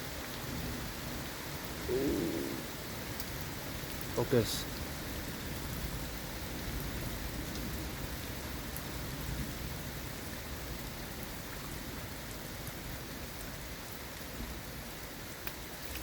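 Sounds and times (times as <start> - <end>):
steady rain hissing: 0.0 - 16.0
rain drop ticks: 2.0 - 4.6, 7.4 - 7.8, 15.3 - 16.0.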